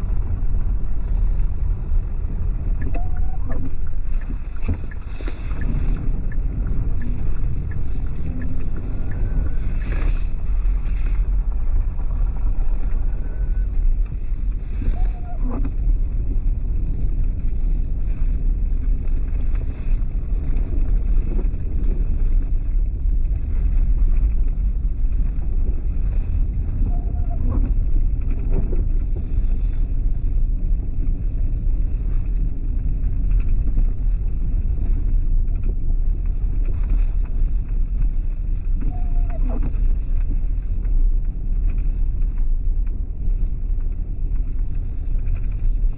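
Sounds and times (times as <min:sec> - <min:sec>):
vehicle rumble: 0:00.0 - 0:45.9
wind noise: 0:00.0 - 0:45.9
faint squeak: 0:02.9 - 0:03.9, 0:14.7 - 0:15.8, 0:26.8 - 0:27.7, 0:38.8 - 0:39.8.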